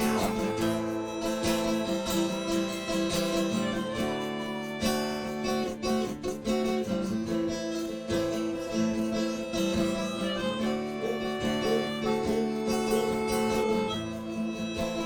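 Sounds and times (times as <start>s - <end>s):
strummed acoustic guitar: 0.0s - 15.0s.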